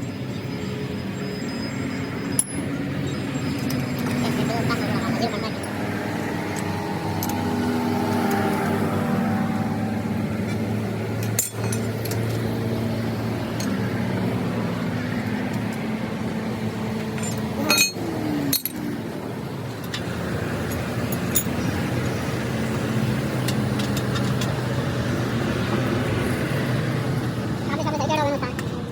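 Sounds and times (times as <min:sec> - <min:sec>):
steady motor drone: 0:00.0 - 0:28.9
sharp metal clinks and knocks: 0:02.2 - 0:05.8, 0:11.2 - 0:12.4, 0:17.0 - 0:18.8, 0:19.7 - 0:21.8.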